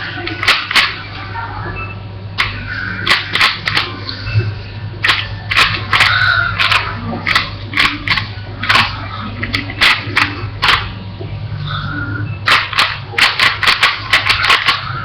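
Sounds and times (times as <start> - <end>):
plastic puzzle cube clacking: 0.2 - 1.0, 2.4 - 4.0, 5.0 - 10.9, 12.5 - 15.0.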